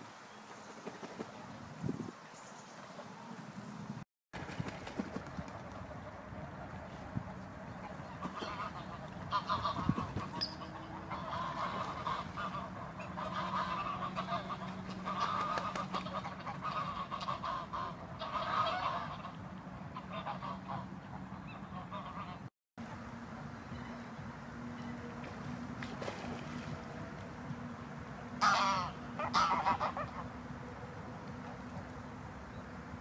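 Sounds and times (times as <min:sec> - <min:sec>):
steady low hum: 0:03.1 - 0:33.0
geese honking: 0:07.8 - 0:22.5, 0:28.3 - 0:30.5.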